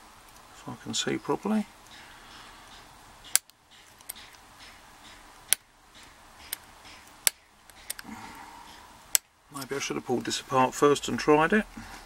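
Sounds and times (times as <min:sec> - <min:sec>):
metal probe clicking on padlock: 0:03.2 - 0:08.1.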